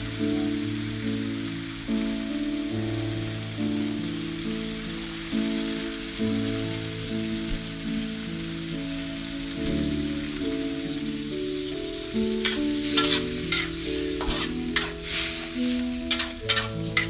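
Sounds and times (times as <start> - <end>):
background music: 0.0 - 17.0
food sizzling in oil: 0.0 - 17.0.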